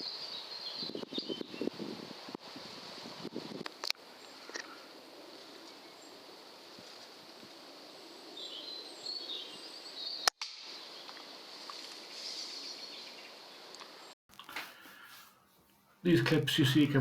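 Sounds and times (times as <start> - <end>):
songbirds chirping: 0.0 - 1.8, 7.6 - 11.2.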